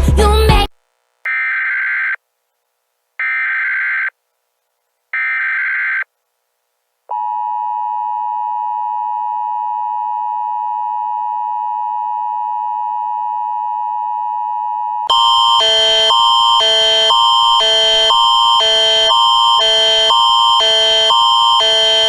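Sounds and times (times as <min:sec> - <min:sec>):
digital data bursts: 0:15.1 - 0:22.0
two-tone attention signal: 0:15.1 - 0:22.0.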